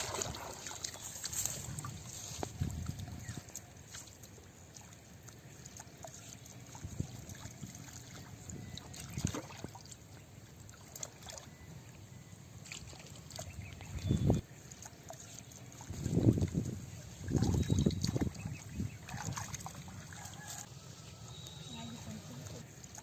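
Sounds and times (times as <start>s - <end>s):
water splash: 0.0s - 5.0s, 5.6s - 10.0s, 14.7s - 20.6s
water sloshing and trickling: 0.0s - 23.0s.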